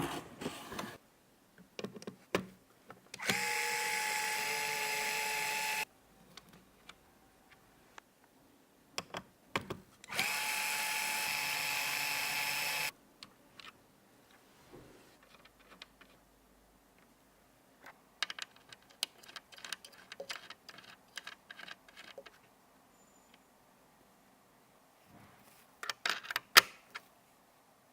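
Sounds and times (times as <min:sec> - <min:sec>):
electric screwdriver running: 0:03.2 - 0:05.8, 0:10.1 - 0:12.9.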